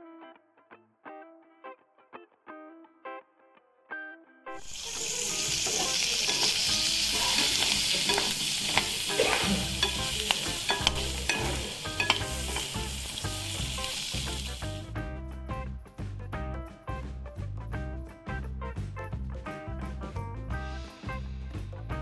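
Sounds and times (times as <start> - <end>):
plucked guitar music: 0.0 - 22.0
food sizzling in a hot pan: 4.5 - 14.9
utensil scraping a pan: 4.6 - 14.6.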